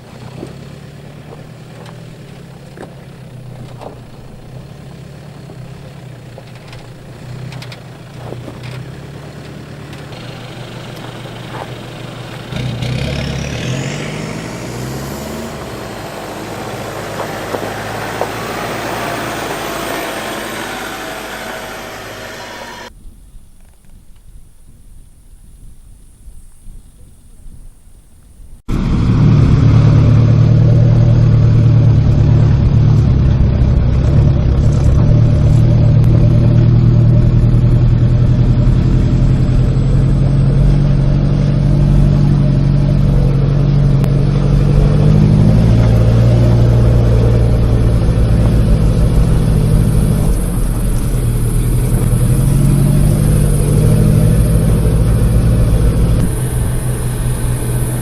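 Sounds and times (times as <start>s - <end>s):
off-road vehicle engine running: 0.0s - 23.0s, 28.6s - 58.0s.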